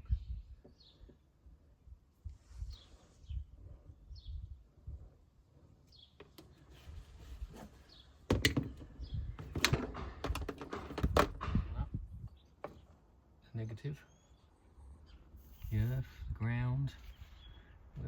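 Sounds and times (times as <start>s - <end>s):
low rumbling handling noise: 7.2s - 13.0s
loud knocks and clatter: 9.4s - 11.7s
faint bird chirps: 12.3s - 16.4s, 17.0s - 18.0s.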